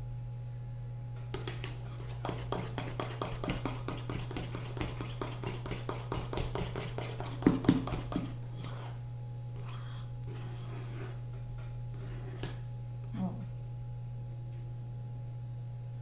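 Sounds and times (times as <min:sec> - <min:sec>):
utensil stirring batter in bowl: 0:01.2 - 0:12.6.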